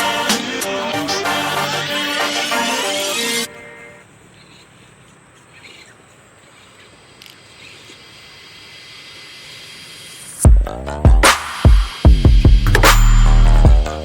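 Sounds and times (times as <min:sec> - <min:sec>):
background music: 0:00.0 - 0:04.0, 0:10.5 - 0:14.0
quiet outdoor hiss: 0:00.0 - 0:10.8
thin high insect whine: 0:06.6 - 0:10.5.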